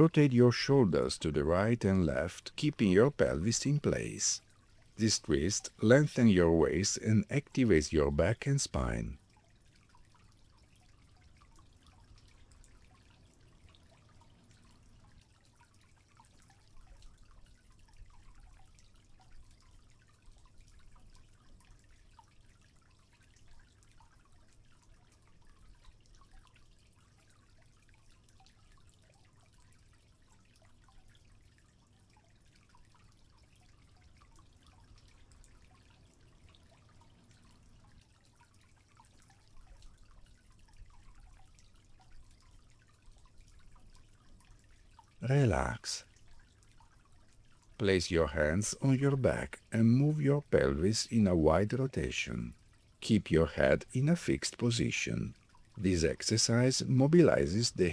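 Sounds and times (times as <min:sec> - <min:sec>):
low steady hum: 0:00.0 - 0:09.2, 0:45.2 - 0:46.1, 0:47.8 - 0:57.9
water trickling and dripping: 0:00.0 - 0:57.9.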